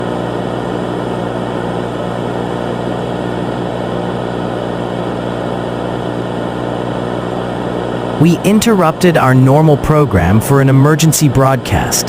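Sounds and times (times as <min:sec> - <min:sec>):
low droning buzz with hiss: 0:00.0 - 0:12.0.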